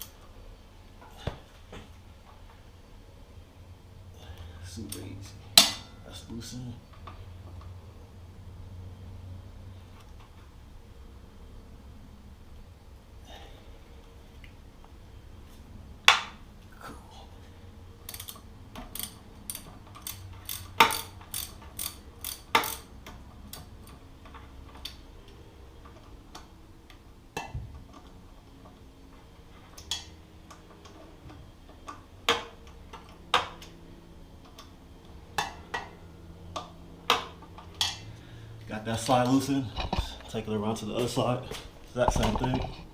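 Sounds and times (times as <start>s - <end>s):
socket ratchet clicking: 18.1s - 24.0s.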